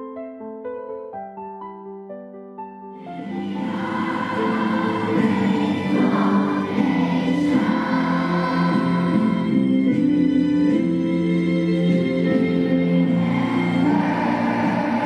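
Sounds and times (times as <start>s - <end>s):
choir singing long notes: 3.0s - 10.1s, 12.0s - 15.0s.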